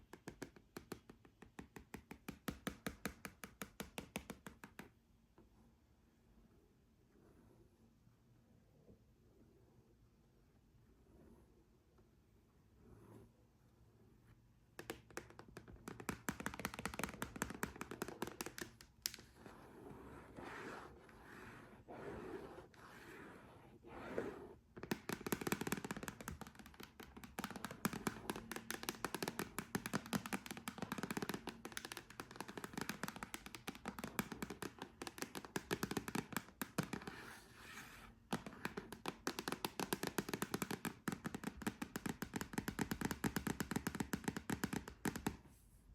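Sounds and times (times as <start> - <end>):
fingernails tapping: 14.8 - 19.2, 24.8 - 37.1.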